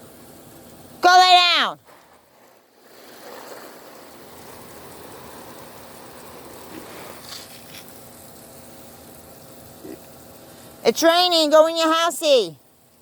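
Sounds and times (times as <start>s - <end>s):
steady rain falling: 1.8s - 10.7s.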